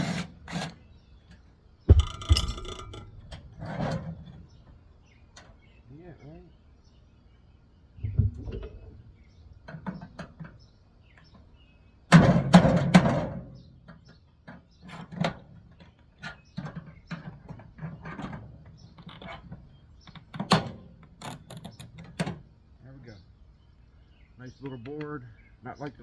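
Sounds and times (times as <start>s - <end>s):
hand tools clicking and rattling: 1.9s - 4.1s
loud clatter: 1.9s - 4.2s.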